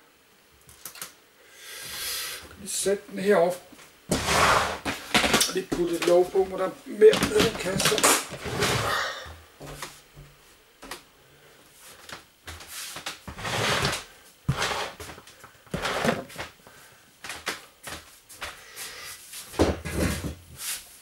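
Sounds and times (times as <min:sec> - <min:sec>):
rustling scrapes and knocks: 0:04.1 - 0:06.2, 0:07.1 - 0:08.9, 0:12.5 - 0:16.6, 0:19.3 - 0:20.8.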